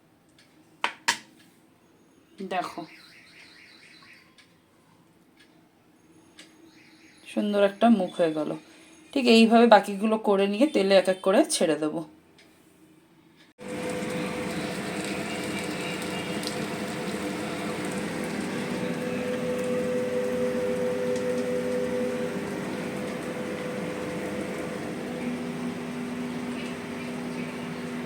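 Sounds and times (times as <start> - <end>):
food deep-frying in oil: 13.6 - 28.0
steady hum: 13.6 - 28.0.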